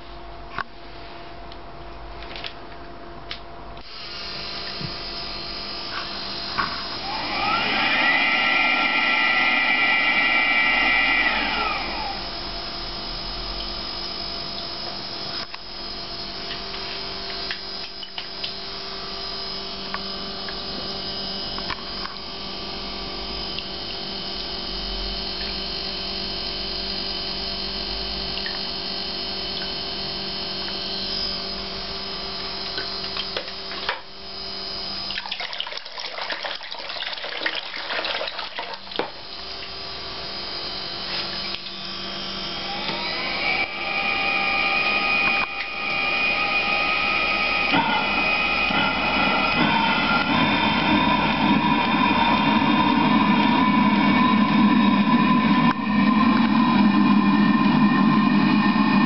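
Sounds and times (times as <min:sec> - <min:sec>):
water heater motor whir and hum: 0:00.0 - 0:59.0
rising whine: 0:03.8 - 0:35.1, 0:39.0 - 0:59.0.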